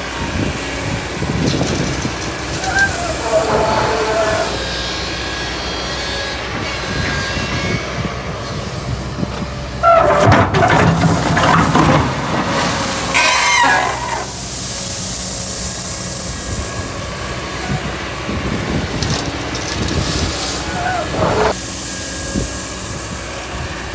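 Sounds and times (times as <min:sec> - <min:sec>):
excavator engine running: 0:00.0 - 0:23.9
loud sliding pitched cry: 0:02.5 - 0:04.6, 0:09.8 - 0:14.5, 0:20.6 - 0:21.6.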